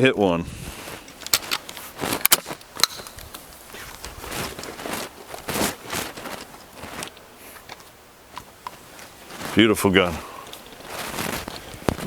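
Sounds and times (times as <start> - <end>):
scuffing footsteps: 0.7 - 7.1, 8.4 - 12.0.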